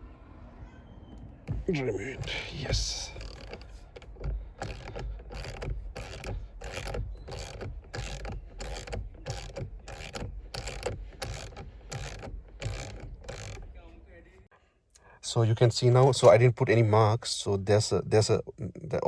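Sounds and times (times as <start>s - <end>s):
ratchet wrench clicking: 3.1s - 13.8s.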